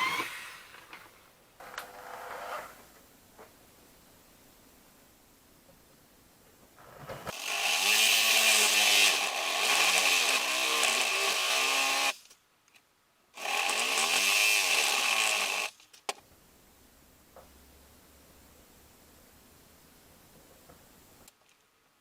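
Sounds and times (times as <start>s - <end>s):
power tool motor cutting wood: 0.0s - 0.7s, 7.3s - 12.2s, 13.4s - 15.7s.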